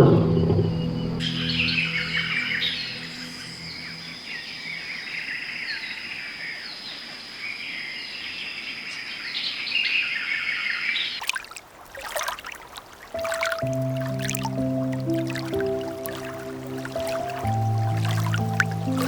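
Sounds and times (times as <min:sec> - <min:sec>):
steady high-pitched tone: 0:00.0 - 0:05.2
small birds chirping: 0:00.0 - 0:11.3, 0:13.1 - 0:19.0
splashy noise: 0:11.2 - 0:19.0.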